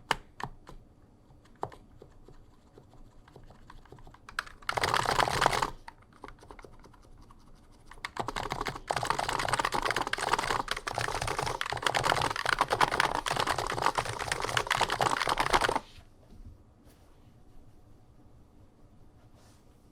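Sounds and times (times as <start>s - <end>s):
deep keyboard keystrokes: 0.0s - 15.8s.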